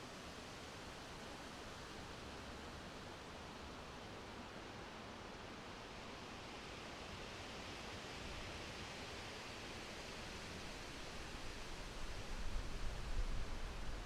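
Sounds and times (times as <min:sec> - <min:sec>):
wind rustling leaves: 0:10.6 - 0:14.0.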